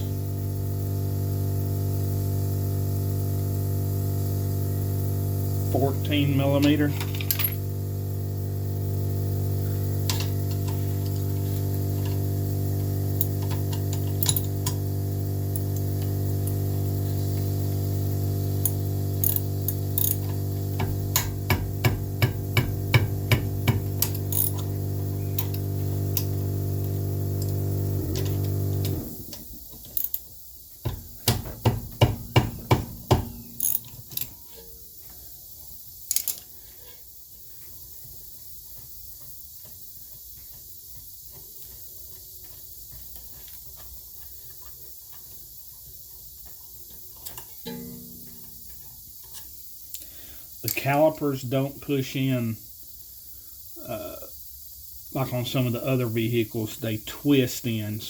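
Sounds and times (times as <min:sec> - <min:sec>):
steady machine hum: 0:00.0 - 0:29.8, 0:47.7 - 0:48.8
socket ratchet clicking: 0:13.2 - 0:14.8, 0:18.6 - 0:24.8, 0:33.5 - 0:34.3, 0:36.1 - 0:36.4.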